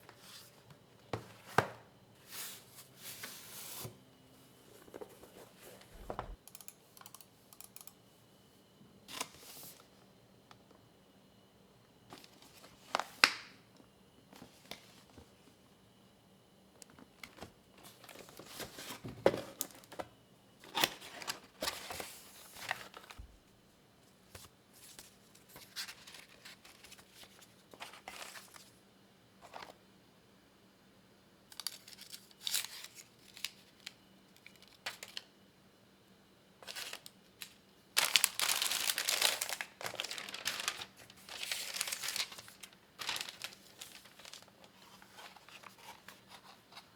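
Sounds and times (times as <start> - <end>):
packaging crinkling and tearing: 36.6 - 46.5.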